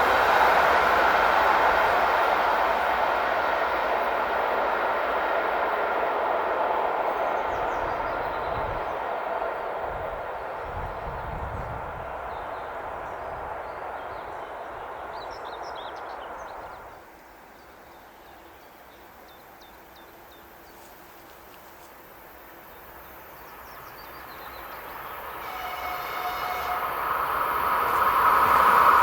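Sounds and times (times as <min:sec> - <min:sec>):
train running noise: 0:00.0 - 0:29.0
birds chirping: 0:11.8 - 0:20.9.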